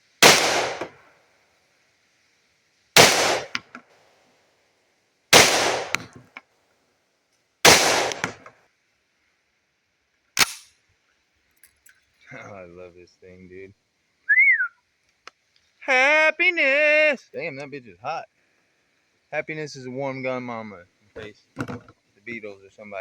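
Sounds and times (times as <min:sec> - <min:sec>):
shotgun firing: 0:00.2 - 0:01.0, 0:03.0 - 0:03.6, 0:05.4 - 0:06.2, 0:07.7 - 0:08.5
small sharp clicks: 0:08.0 - 0:08.5, 0:10.4 - 0:10.8.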